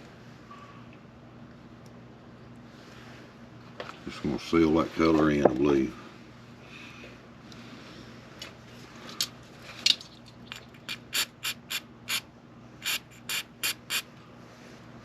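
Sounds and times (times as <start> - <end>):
short hissing sprays: 10.9 - 12.2, 12.8 - 14.0.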